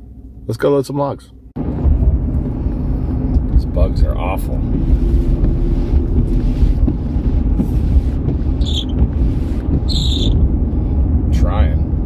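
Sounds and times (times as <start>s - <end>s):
vehicle engine and road rumble: 0.0s - 12.0s
wind buffeting microphone: 1.6s - 12.0s
short high-pitched chirps: 9.9s - 10.4s.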